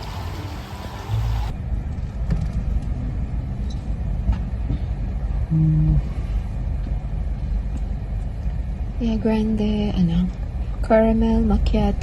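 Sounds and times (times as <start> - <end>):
car engine running: 0.0 - 4.6.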